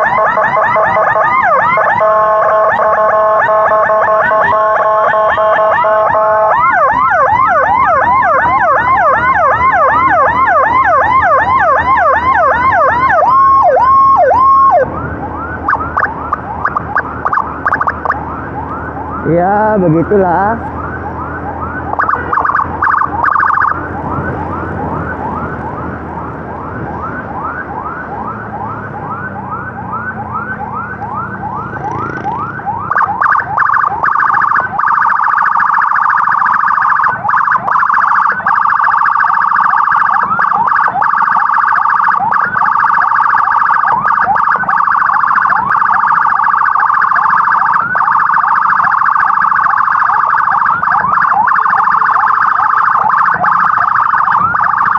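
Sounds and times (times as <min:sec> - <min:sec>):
ambulance siren: 0:00.0 - 0:54.9
engine running: 0:05.8 - 0:34.8.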